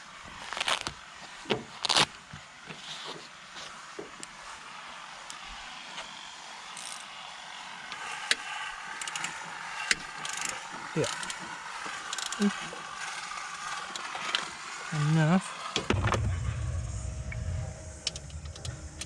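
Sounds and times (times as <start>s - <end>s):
tool clicks and knocks: 15.8s - 19.0s.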